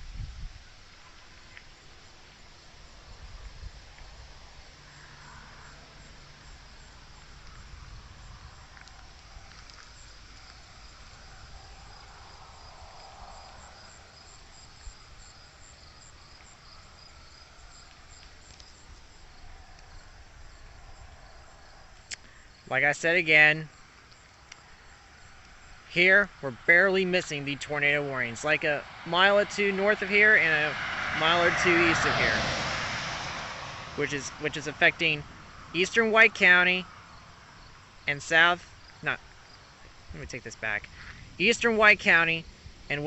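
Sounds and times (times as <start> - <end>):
faint low rumble: 0.0 - 22.4
crickets chirping: 0.0 - 43.0.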